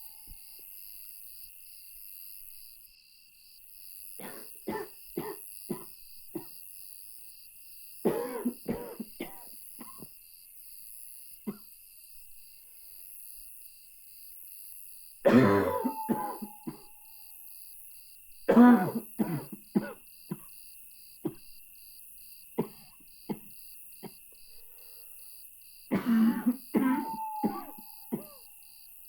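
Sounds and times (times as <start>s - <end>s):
person barking cough: 4.2s - 6.5s, 8.1s - 10.1s, 15.3s - 17.0s, 18.5s - 20.5s, 22.6s - 24.2s, 25.9s - 28.4s.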